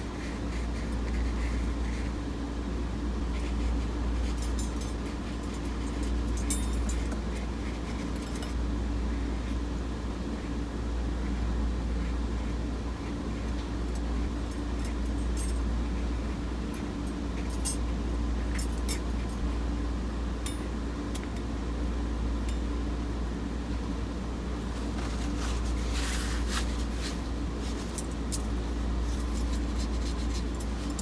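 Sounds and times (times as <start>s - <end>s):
steady low hum: 0.0s - 31.0s
brush scrubbing on paper: 24.6s - 30.9s.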